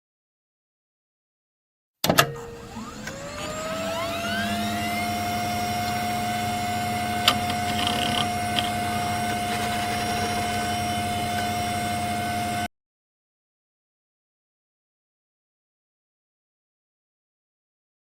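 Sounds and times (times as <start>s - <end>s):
machine whine with low hum: 2.1s - 12.7s.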